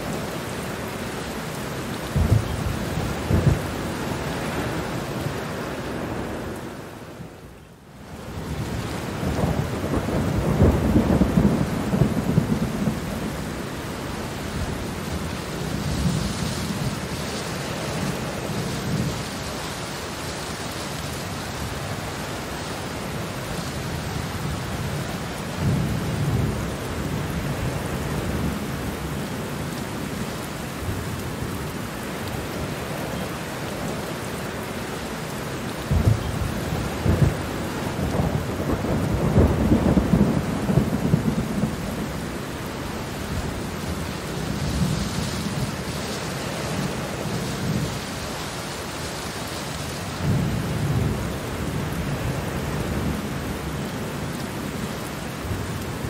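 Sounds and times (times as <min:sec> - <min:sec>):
steady rain: 0:00.0 - 0:56.0
rolling thunder: 0:02.1 - 0:03.9, 0:08.4 - 0:13.6, 0:35.8 - 0:42.4.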